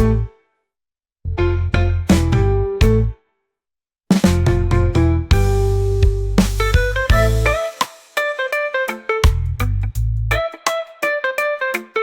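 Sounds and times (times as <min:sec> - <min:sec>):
reggae music: 0:01.7 - 0:03.1, 0:04.2 - 0:12.0.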